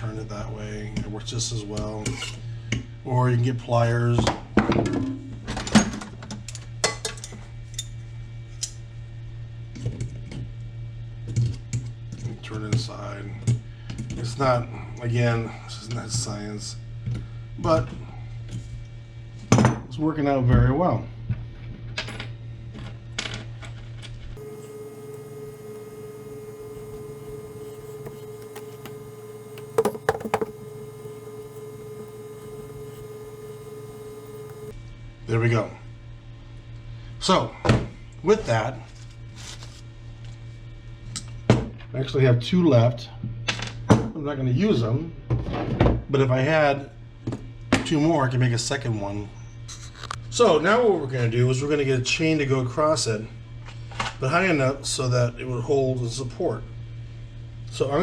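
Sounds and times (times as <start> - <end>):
sharp clicks: 24.4 - 34.7
steady low hum: 24.4 - 34.7.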